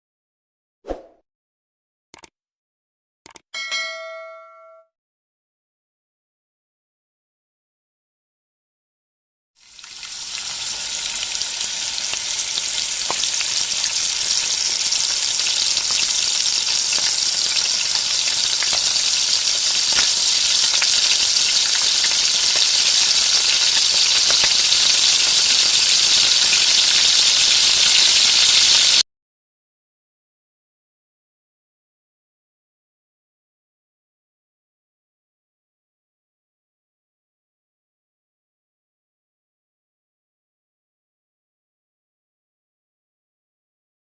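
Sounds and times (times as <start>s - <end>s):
food sizzling in hot oil: 9.6s - 29.0s.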